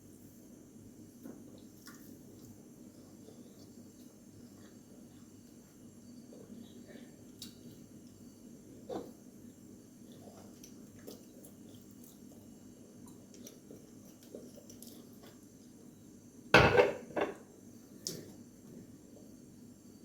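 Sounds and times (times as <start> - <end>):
dishes clattering: 16.6 - 17.4.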